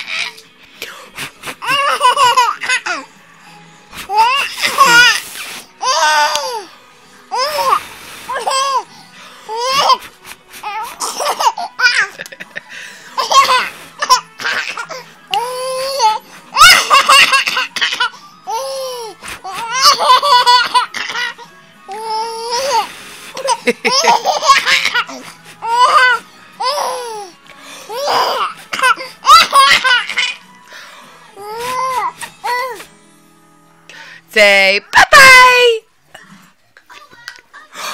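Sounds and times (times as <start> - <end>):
baby giggling and squealing: 4.1 - 5.2.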